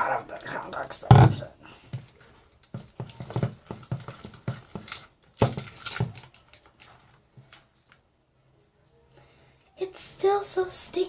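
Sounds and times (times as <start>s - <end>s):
spoon mixing sticky slime: 1.9s - 7.0s.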